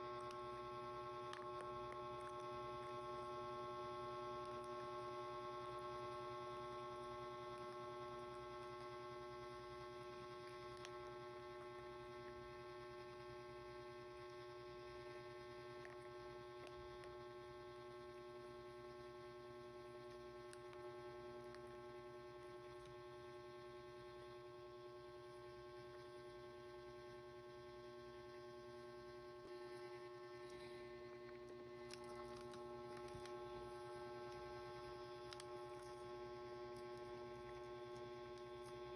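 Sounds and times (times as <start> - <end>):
quiet electrical hum: 0.0 - 38.9.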